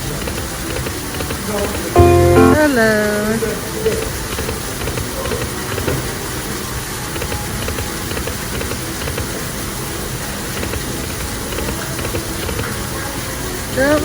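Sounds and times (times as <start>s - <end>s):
slot machine reels ticking: 0.0s - 3.0s, 7.1s - 12.7s
indoor waterfall rushing: 2.6s - 14.0s.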